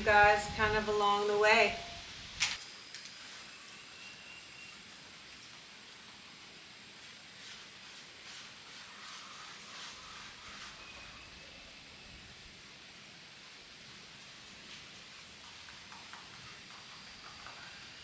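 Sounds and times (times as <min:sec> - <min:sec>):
steady high hiss: 0:00.0 - 0:18.0
soft rustles: 0:07.0 - 0:11.4.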